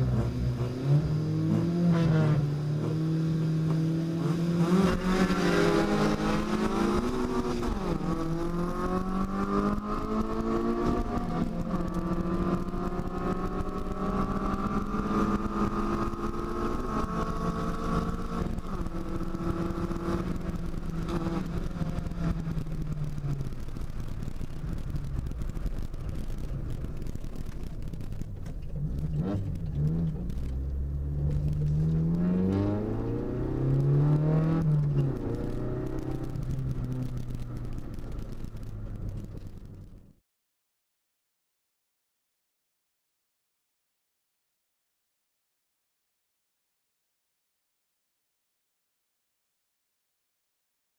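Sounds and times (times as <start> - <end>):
car engine revving: 0.0 - 39.9
gear change: 0.0 - 40.1.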